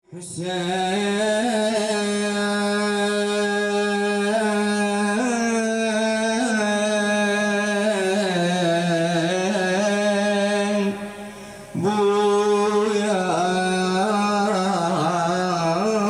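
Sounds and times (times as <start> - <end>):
man chanting a lament: 0.1 - 16.0.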